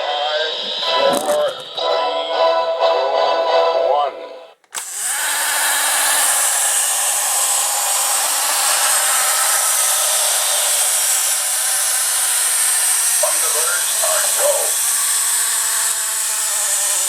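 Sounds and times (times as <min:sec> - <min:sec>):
toy rocket launch rushing noise: 0:04.7 - 0:17.0.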